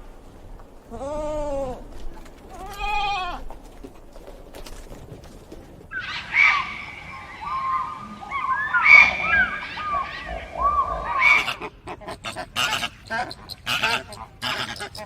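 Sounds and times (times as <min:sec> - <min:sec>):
birds calling: 0:05.9 - 0:15.0.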